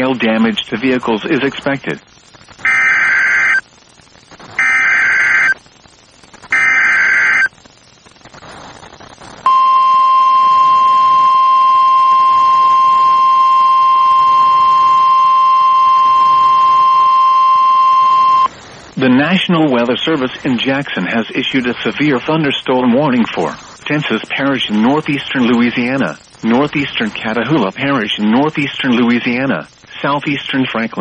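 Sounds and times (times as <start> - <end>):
digital data bursts: 0.0 - 20.2
steady warning alarm tone: 6.6 - 7.5, 9.5 - 18.5.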